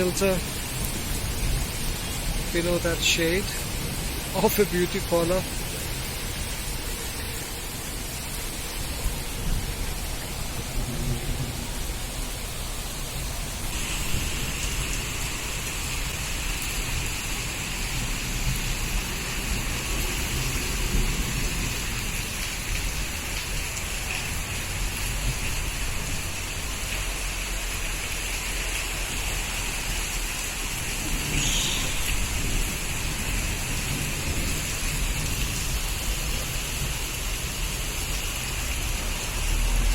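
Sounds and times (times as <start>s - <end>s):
rain falling steadily: 0.0s - 39.9s
high-pitched drone: 31.3s - 32.6s.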